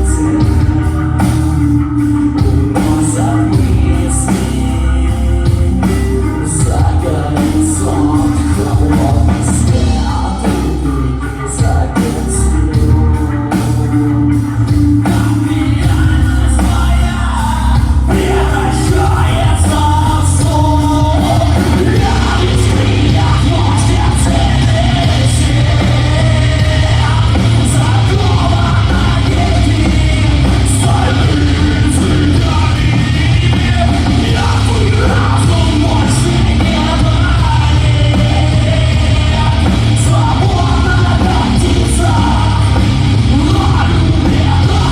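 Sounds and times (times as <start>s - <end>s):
live rock band playing: 0.0s - 44.9s
vocalist singing and shouting: 0.0s - 44.9s.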